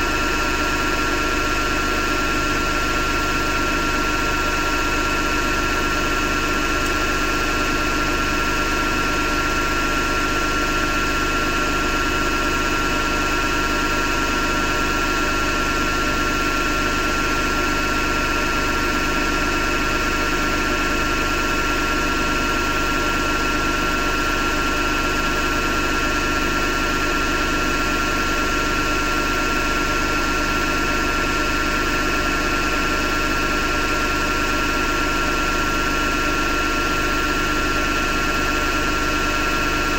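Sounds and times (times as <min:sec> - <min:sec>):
washing machine grinding and whining: 0:00.0 - 0:39.9.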